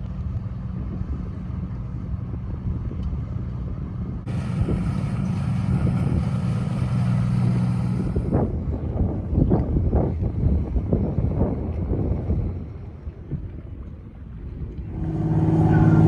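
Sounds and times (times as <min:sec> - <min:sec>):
engine running: 0:00.0 - 0:08.6, 0:14.8 - 0:16.0.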